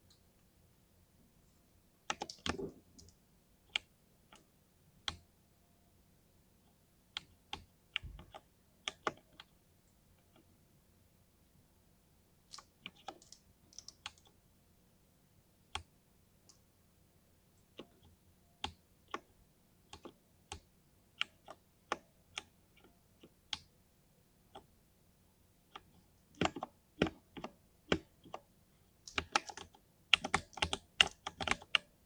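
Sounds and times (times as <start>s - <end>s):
mechanical keyboard typing: 2.1s - 3.2s, 12.5s - 14.4s, 25.8s - 28.5s, 29.1s - 32.0s.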